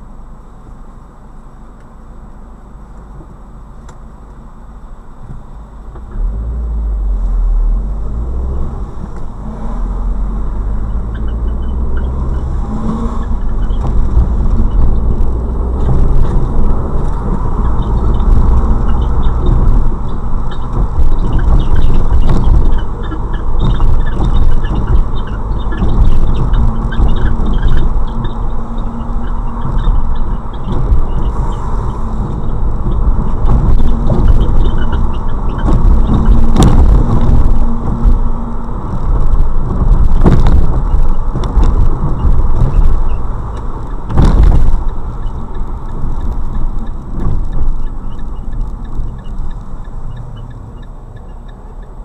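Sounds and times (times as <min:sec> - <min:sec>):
car road rumble: 0:00.0 - 0:52.0
high squeaks: 0:10.7 - 0:16.3, 0:17.5 - 0:38.6.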